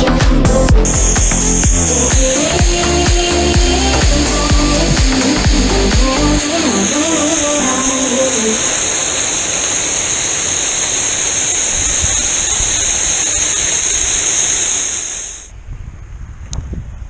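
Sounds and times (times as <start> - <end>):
waterfall rushing: 0.0 - 11.7.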